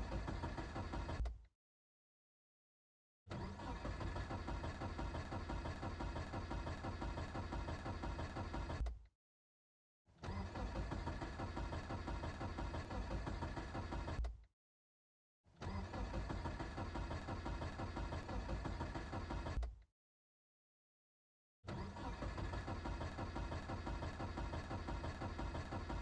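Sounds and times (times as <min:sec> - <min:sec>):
car engine cranking: 0:00.0 - 0:01.4, 0:03.3 - 0:09.0, 0:10.2 - 0:14.4, 0:15.6 - 0:19.7, 0:21.7 - 0:26.0.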